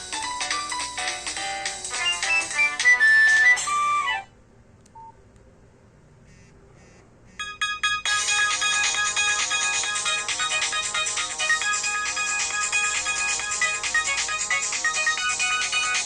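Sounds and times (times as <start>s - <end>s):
polyphonic ringtone melody: 0.1s - 4.3s, 7.4s - 16.0s
faint beep: 5.0s - 5.2s.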